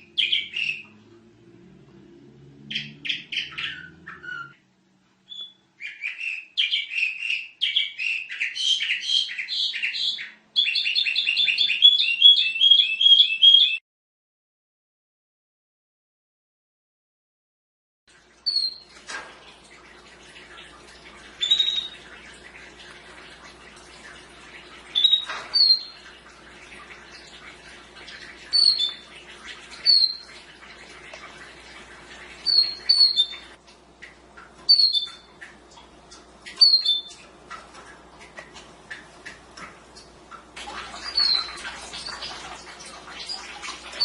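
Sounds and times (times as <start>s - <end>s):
canary chirping: 0.0s - 0.9s, 2.6s - 4.6s, 5.2s - 13.8s, 18.5s - 18.8s, 21.4s - 22.0s, 25.0s - 26.0s, 28.5s - 29.0s, 29.8s - 30.3s, 32.4s - 33.6s, 34.7s - 35.3s, 36.6s - 37.2s, 41.0s - 42.3s.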